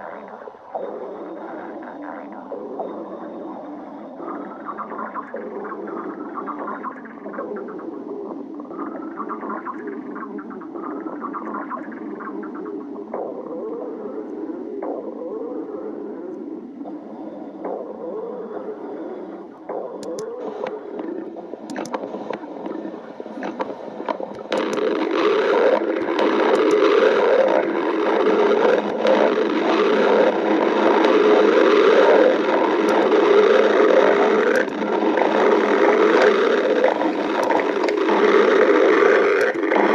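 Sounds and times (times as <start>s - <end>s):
stomach growling: 0.0s - 39.9s
sharp clicks: 19.7s - 39.9s.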